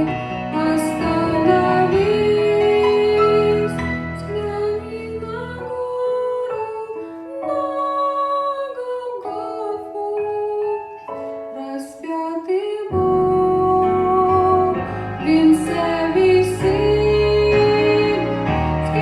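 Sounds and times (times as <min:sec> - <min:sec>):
bass: 0:00.0 - 0:05.9, 0:12.9 - 0:19.0
melody of long held notes: 0:00.0 - 0:19.0
soft keyboard accompaniment: 0:00.0 - 0:19.0.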